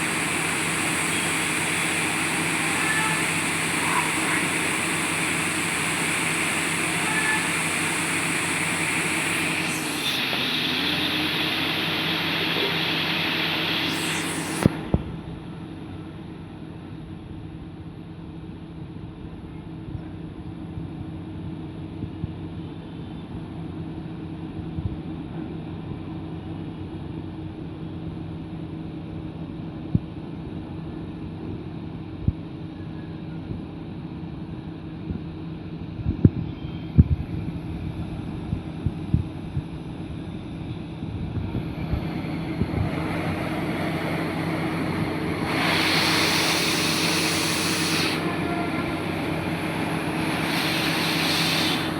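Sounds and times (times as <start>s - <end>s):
loud rushing noise: 0.0s - 15.4s, 41.6s - 51.9s
drilling machine engine running: 0.0s - 16.3s, 39.6s - 51.9s.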